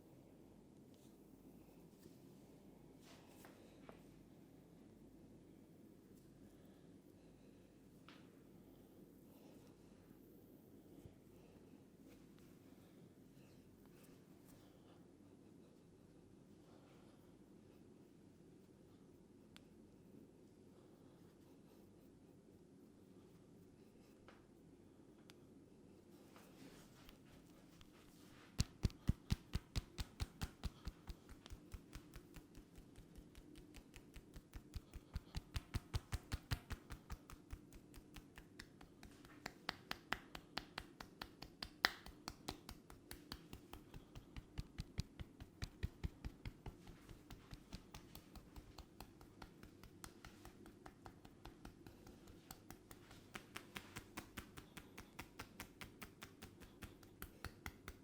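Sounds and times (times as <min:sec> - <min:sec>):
faint steady hum: 0:00.0 - 0:58.0
hand taps and snaps on head: 0:28.6 - 0:58.0.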